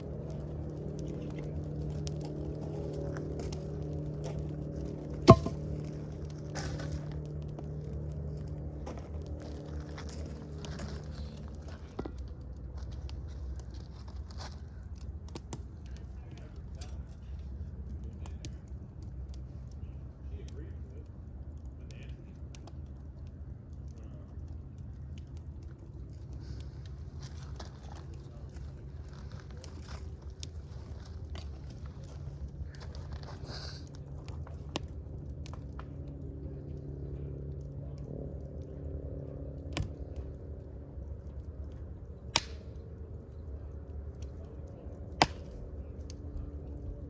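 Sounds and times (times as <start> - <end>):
low rumble: 0.0 - 14.1
wood fire crackling: 0.0 - 47.0
sharp pops of fire: 42.2 - 42.8, 45.0 - 45.7.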